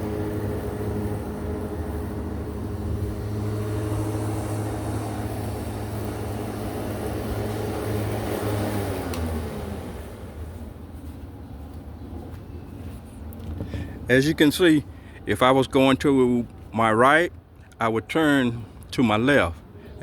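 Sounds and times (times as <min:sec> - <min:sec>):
electric lawnmower motor humming: 0:00.0 - 0:10.6.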